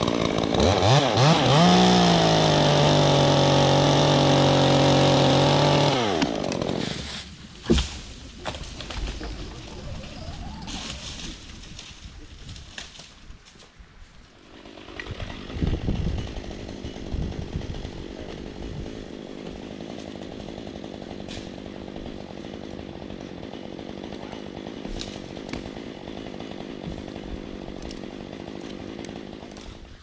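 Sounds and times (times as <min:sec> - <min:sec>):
chainsaw engine running: 0:00.0 - 0:07.2, 0:14.4 - 0:30.0.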